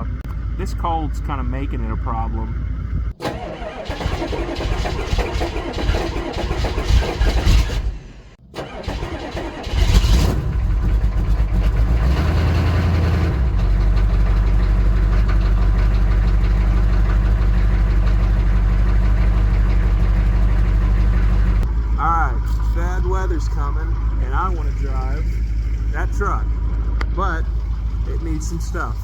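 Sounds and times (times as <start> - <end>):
diesel engine starting and idling: 0.0 - 29.0.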